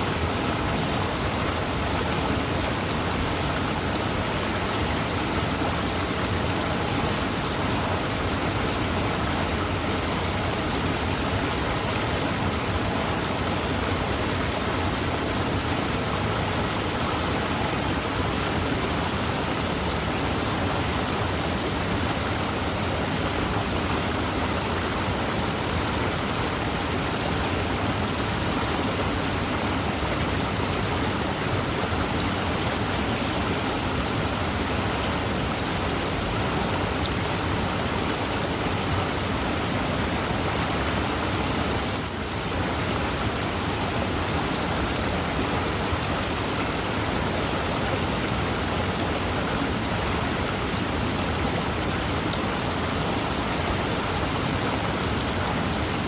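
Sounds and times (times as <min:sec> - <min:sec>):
fast river flowing: 0:00.0 - 0:56.0.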